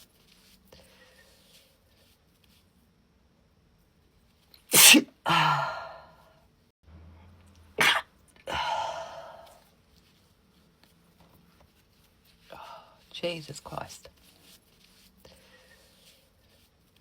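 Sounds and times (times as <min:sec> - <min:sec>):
woman sneezing: 0:04.7 - 0:06.0, 0:07.8 - 0:09.4.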